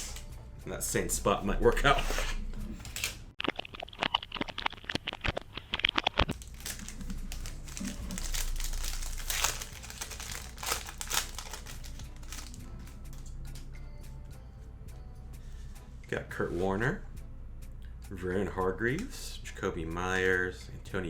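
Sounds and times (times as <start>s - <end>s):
wrapper tearing: 0.0s - 0.2s, 2.0s - 3.3s, 4.0s - 13.3s
wrapper crinkling: 2.8s - 3.3s, 4.0s - 13.3s.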